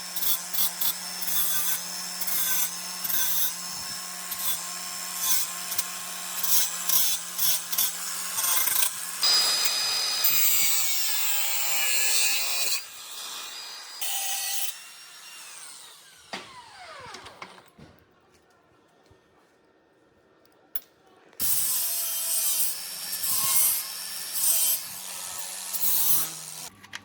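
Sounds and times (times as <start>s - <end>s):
power grinder humming: 0.0s - 17.7s, 21.5s - 26.7s
grinder scraping metal: 0.1s - 16.0s, 21.4s - 26.7s.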